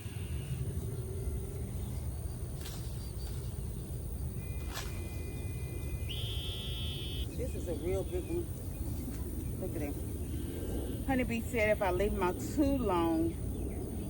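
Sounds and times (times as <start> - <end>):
wind rumble: 0.0 - 14.0.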